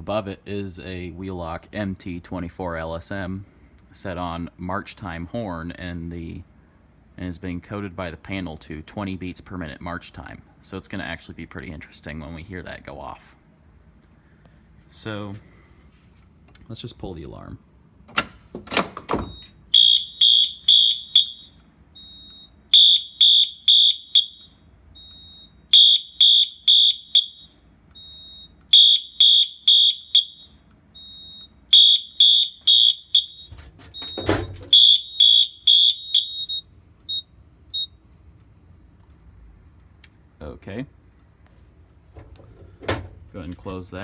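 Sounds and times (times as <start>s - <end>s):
fire alarm horn beeps: 19.2s - 38.0s
loud clunk: 33.5s - 34.7s, 42.2s - 43.2s.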